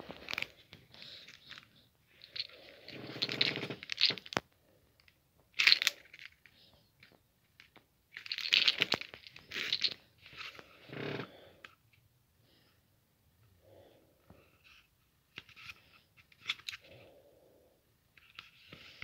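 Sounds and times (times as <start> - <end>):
packaging crinkling and rustling: 0.0 - 1.7.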